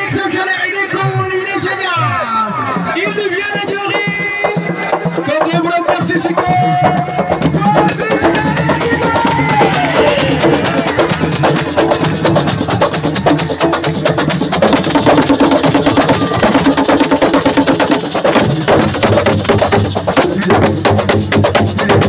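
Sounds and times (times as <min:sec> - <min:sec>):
fast hand drumming: 0:03.0 - 0:22.0.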